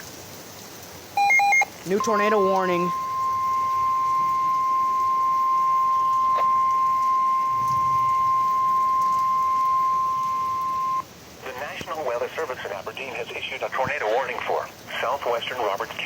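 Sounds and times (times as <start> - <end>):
long steady warning beep: 1.2 - 11.0.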